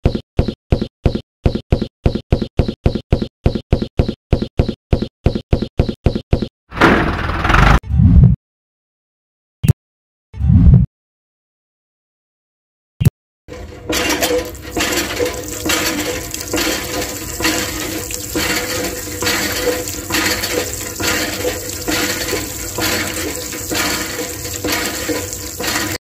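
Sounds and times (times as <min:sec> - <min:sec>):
small water pump running: 0:13.5 - 0:26.0
water spurting and splashing: 0:13.5 - 0:26.0.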